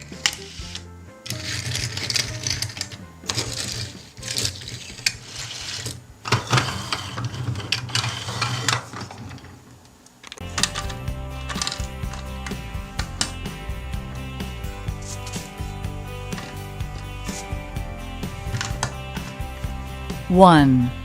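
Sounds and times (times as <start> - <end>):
plastic toy parts clicking and rattling: 0.0 - 13.4.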